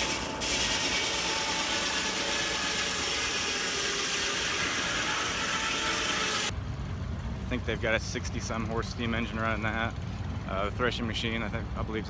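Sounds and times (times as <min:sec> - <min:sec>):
steam-driven sawmill running: 0:00.0 - 0:06.5.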